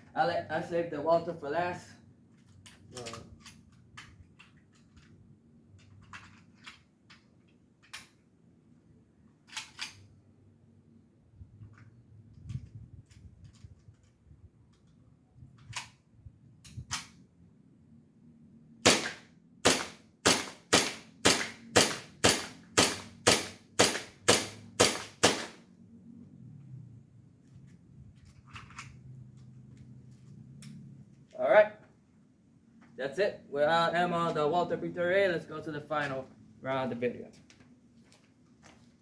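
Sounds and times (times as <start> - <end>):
airsoft pistol shots: 18.8 - 25.6.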